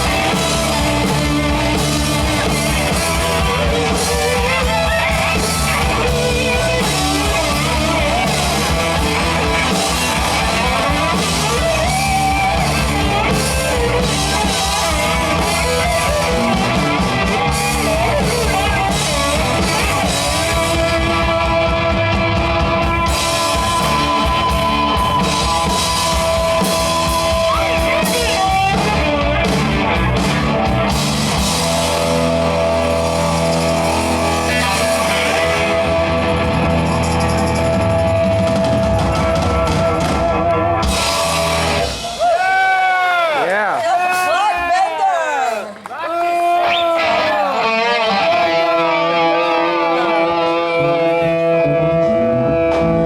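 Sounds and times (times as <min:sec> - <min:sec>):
held electric guitar notes: 0:00.0 - 0:42.0, 0:47.0 - 0:53.0
rock band playing: 0:00.0 - 0:43.6, 0:46.2 - 0:53.0.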